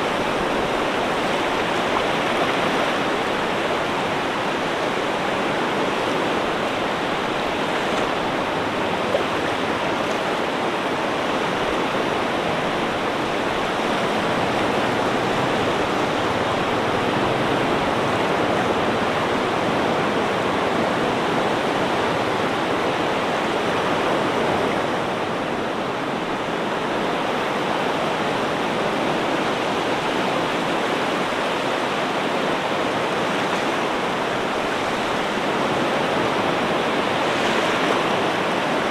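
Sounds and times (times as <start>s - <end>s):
ocean surf washing in: 0.0s - 38.9s.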